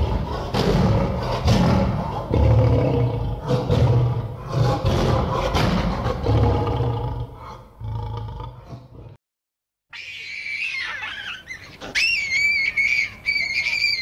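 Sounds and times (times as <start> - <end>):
lion roaring: 0.0 - 9.2
high whistling animal call: 9.9 - 14.0.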